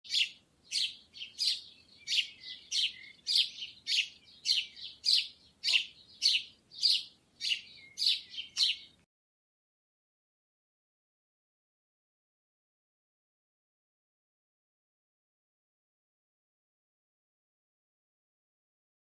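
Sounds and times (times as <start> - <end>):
sparrow chirping: 0.1 - 9.0.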